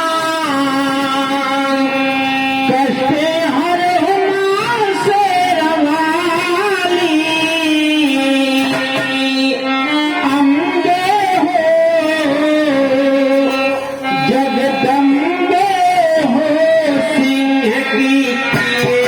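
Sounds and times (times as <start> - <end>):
dholak drum: 0.0 - 19.0
man singing devotional song: 0.0 - 19.0.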